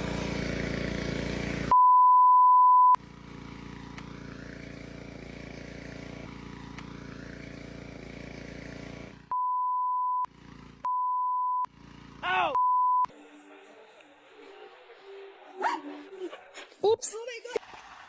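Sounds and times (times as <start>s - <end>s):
motor droning: 0.0s - 1.8s, 3.0s - 9.5s, 10.1s - 16.4s
censor bleep tone: 1.7s - 3.0s, 9.3s - 10.3s, 10.9s - 11.7s, 12.6s - 13.1s.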